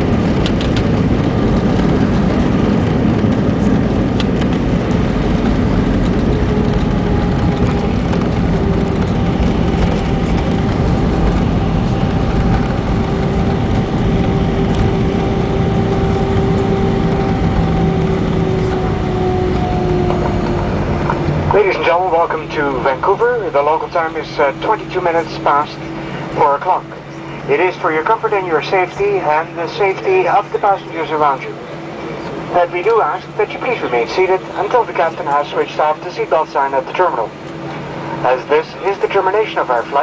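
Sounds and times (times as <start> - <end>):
engine whine: 0.0 - 40.0
jet engines at low power: 0.0 - 40.0.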